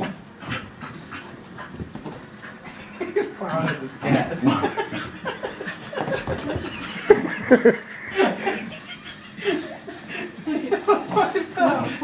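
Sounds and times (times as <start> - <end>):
person laughing: 4.5 - 11.2.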